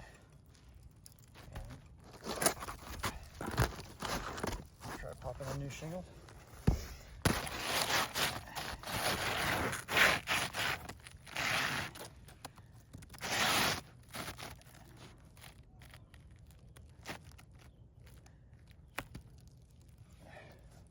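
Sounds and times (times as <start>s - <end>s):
roof shingle scraping and rustling: 1.2s - 16.1s.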